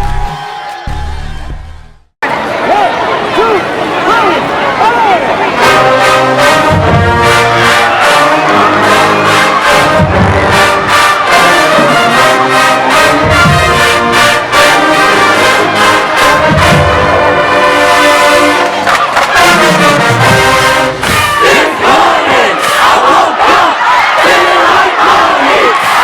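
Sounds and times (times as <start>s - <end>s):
brass section sustained chords: 3.6s - 23.1s
marching band drum beat: 5.6s - 17.8s, 18.8s - 23.2s.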